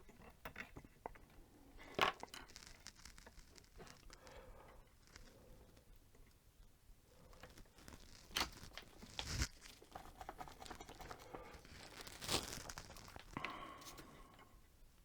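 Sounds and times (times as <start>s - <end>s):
rustling and scraping: 1.8s - 5.8s, 7.2s - 14.3s.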